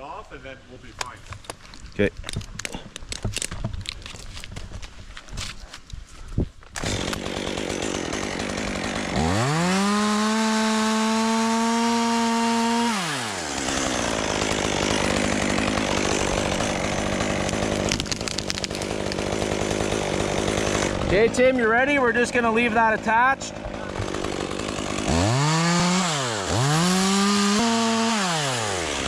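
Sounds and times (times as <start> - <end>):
chainsaw running and revving: 6.8 - 29.0.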